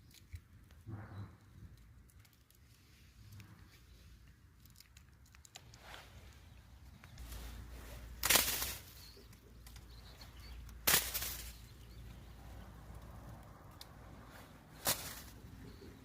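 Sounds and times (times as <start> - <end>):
short rustling: 7.2 - 11.9, 14.2 - 15.9
low steady rumble: 9.3 - 16.0.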